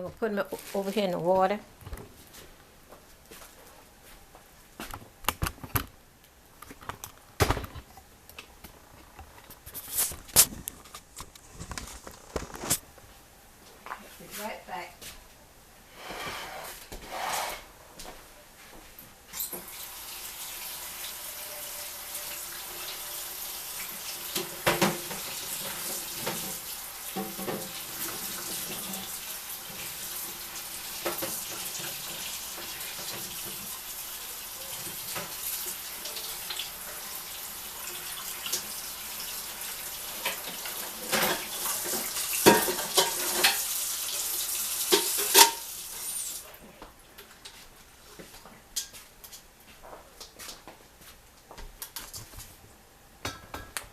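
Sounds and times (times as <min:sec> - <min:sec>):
knocks and clatters of vegetables: 0:06.6 - 0:08.0, 0:08.6 - 0:12.8.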